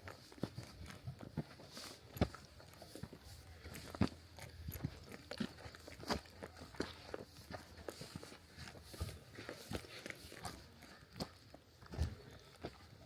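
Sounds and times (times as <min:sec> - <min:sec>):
footsteps crunching on trail: 0:00.0 - 0:13.0.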